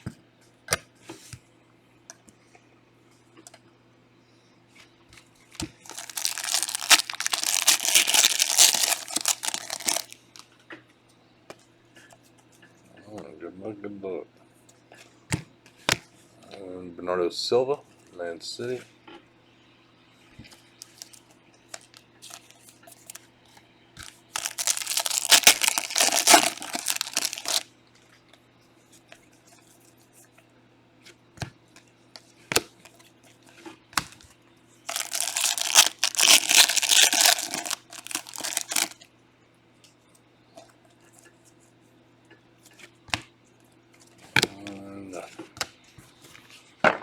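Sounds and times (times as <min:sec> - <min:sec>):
foil wrappers tearing and crinkling: 0:05.6 - 0:10.4, 0:20.8 - 0:23.2, 0:24.0 - 0:27.7, 0:34.9 - 0:39.0.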